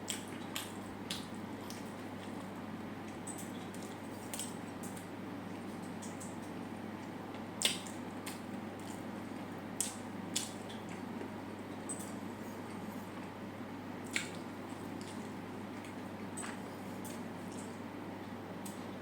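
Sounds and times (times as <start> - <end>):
steady low hum: 0.0 - 19.0
wet chewing with mouth smacks: 7.6 - 11.3, 14.0 - 17.8.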